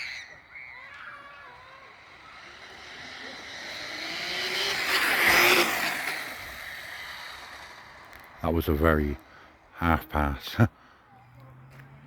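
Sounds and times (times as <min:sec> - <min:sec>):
electric motor whining: 0:00.8 - 0:08.4.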